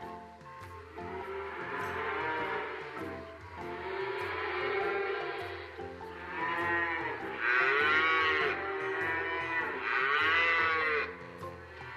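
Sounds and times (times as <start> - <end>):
cattle mooing: 1.2 - 3.0, 3.6 - 11.3.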